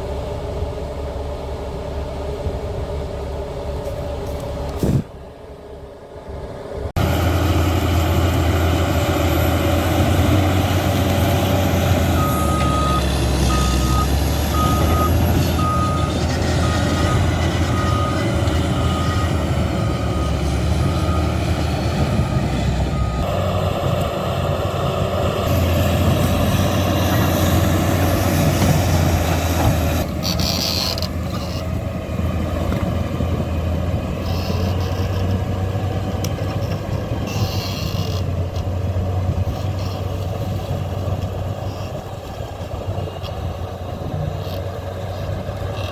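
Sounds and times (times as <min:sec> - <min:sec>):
bulldozer diesel engine running: 0:00.0 - 0:45.9
reversing alarm beeping: 0:11.6 - 0:22.1, 0:22.8 - 0:23.4.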